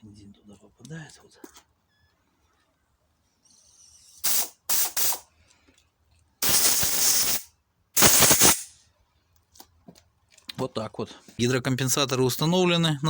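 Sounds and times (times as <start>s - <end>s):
compressed air hissing blasts: 3.6s - 5.3s, 6.4s - 8.8s.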